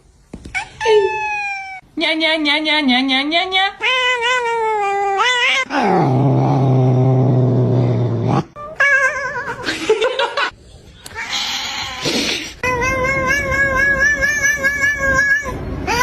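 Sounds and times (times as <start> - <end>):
cat yowling: 3.8 - 5.7, 12.7 - 16.0.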